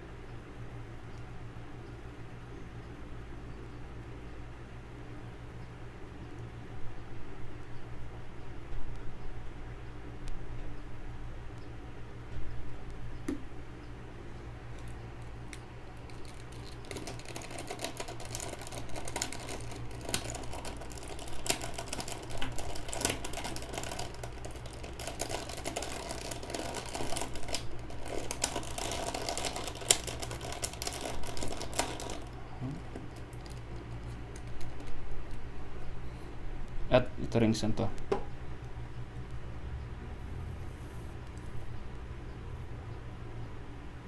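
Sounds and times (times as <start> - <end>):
low steady hum: 0.0 - 44.0.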